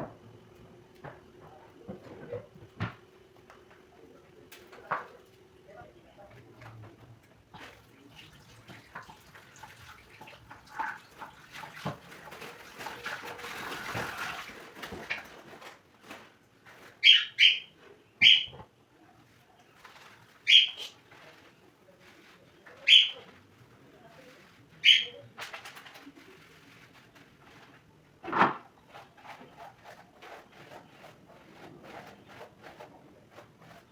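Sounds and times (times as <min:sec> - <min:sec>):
faint background noise: 0:00.0 - 0:33.9
bird giving high calls: 0:17.0 - 0:18.5, 0:20.5 - 0:20.9, 0:22.9 - 0:23.2, 0:24.8 - 0:25.2.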